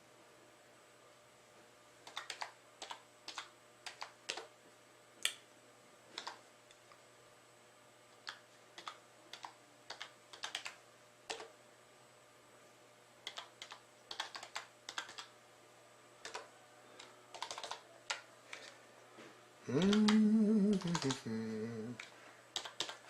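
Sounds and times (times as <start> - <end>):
typing on computer keyboard: 2.0 - 4.5, 6.2 - 6.4, 8.2 - 11.5, 13.2 - 15.3, 16.2 - 18.7, 19.8 - 21.2, 22.0 - 23.0.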